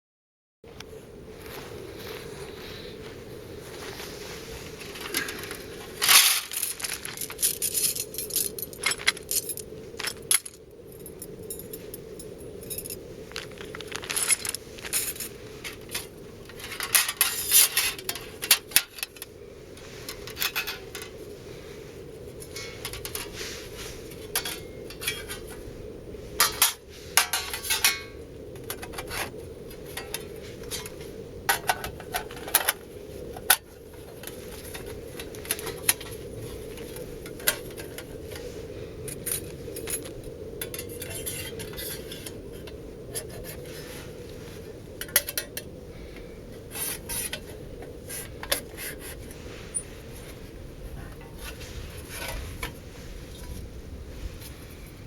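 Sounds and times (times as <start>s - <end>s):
low background noise: 0.7s - 55.0s
metal panels clinking: 5.0s - 10.6s, 26.4s - 32.8s.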